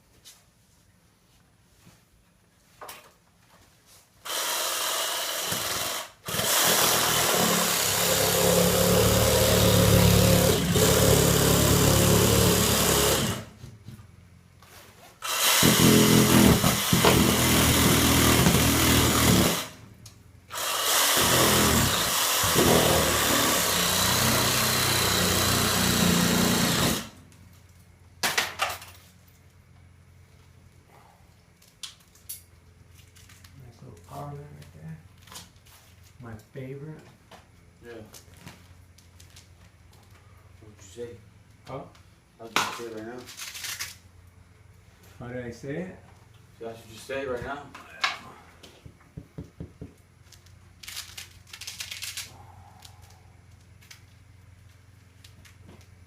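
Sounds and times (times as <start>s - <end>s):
power tool cutting into wall: 4.2s - 13.6s, 15.2s - 19.9s, 20.5s - 27.2s.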